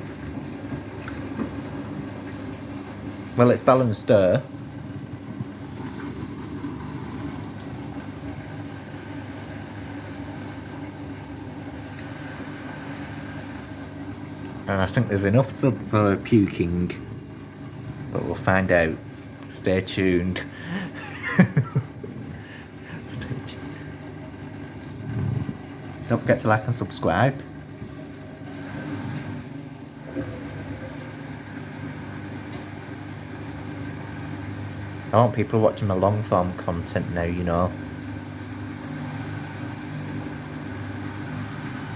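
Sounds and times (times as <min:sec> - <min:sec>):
washing machine motor humming: 0:00.0 - 0:41.9.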